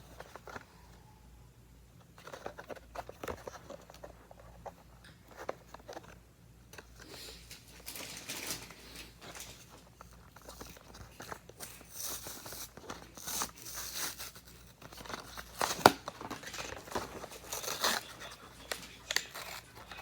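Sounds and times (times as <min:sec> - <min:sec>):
packaging rustling and crinkling: 0:02.2 - 0:20.0
packaging clicks and taps: 0:14.8 - 0:20.0.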